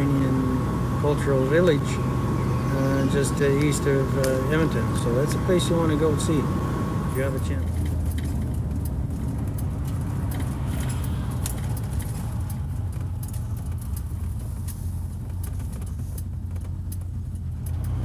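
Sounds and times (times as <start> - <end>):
vehicle engine and road rumble: 0.0 - 18.0
light clicks and rattles: 7.6 - 18.0.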